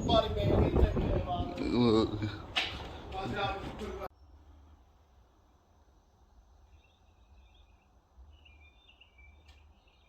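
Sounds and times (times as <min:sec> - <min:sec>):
faint bird chirps: 0:06.5 - 0:10.0.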